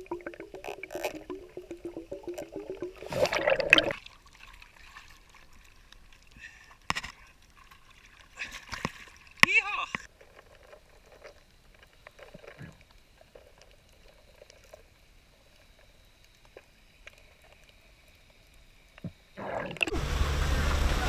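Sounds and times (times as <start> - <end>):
boat engine running: 19.9 - 21.0.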